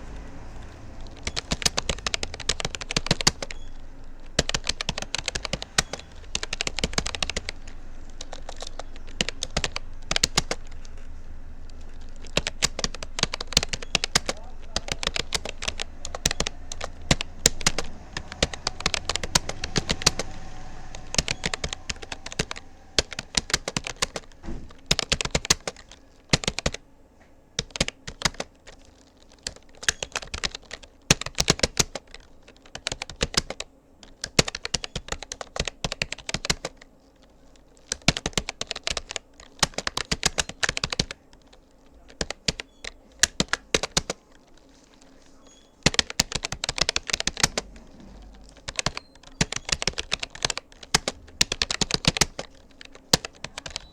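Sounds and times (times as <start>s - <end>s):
keyboard key clicks: 1.0s - 26.8s, 37.8s - 41.5s, 42.1s - 44.2s, 45.8s - 53.9s.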